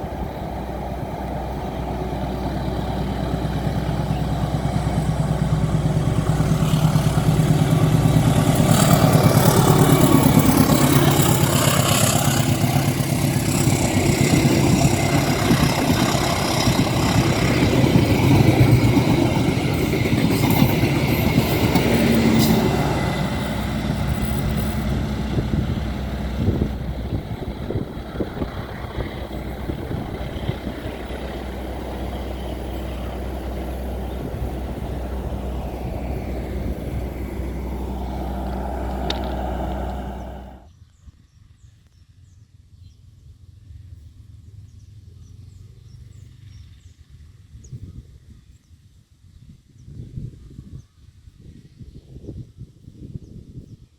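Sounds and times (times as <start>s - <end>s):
diesel locomotive engines: 0.0s - 40.7s.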